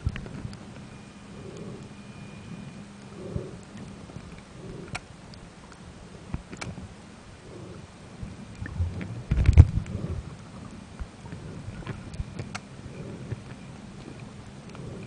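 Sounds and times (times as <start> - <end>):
muffled underwater rumble: 0.0 - 15.0
sharp clicks: 3.0 - 5.4, 11.8 - 12.7.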